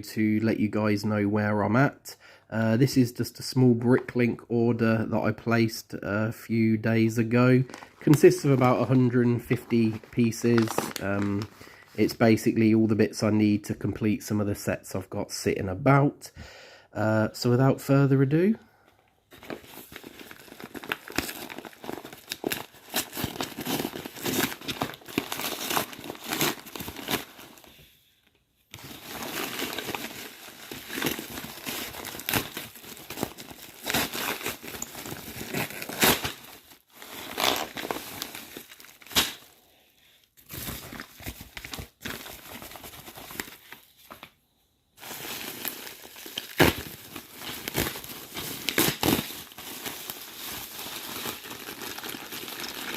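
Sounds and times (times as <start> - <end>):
packaging crinkling and tearing: 7.6 - 11.6, 19.3 - 27.8, 28.7 - 39.6, 40.4 - 44.4, 45.0 - 52.9.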